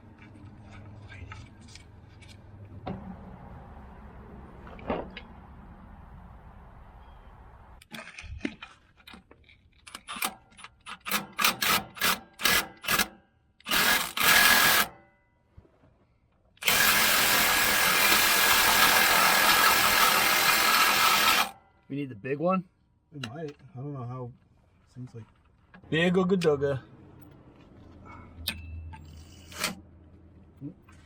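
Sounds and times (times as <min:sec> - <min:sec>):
impact wrench bursts: 0:10.9 - 0:15.0, 0:16.6 - 0:21.6.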